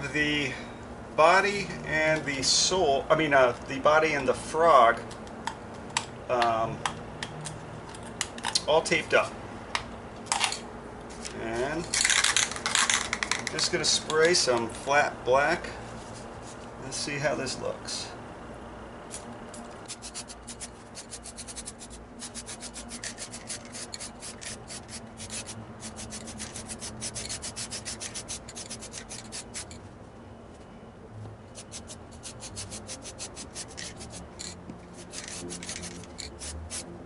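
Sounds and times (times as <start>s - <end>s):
spray can rattling: 12.0s - 13.5s, 19.9s - 29.8s, 31.6s - 36.8s.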